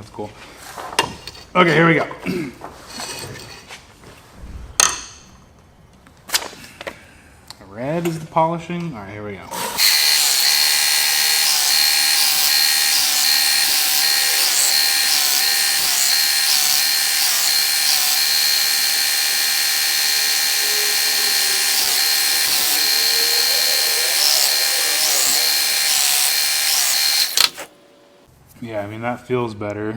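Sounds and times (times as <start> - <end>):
belt sharpener motor whine: 9.6 - 28.3.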